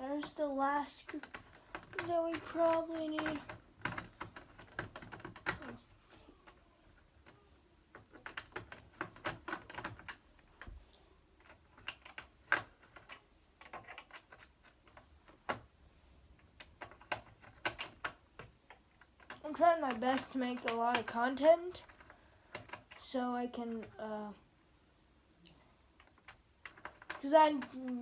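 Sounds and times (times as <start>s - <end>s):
screwdriver clicking on plastic: 1.1s - 5.8s, 16.4s - 23.1s, 26.0s - 28.0s.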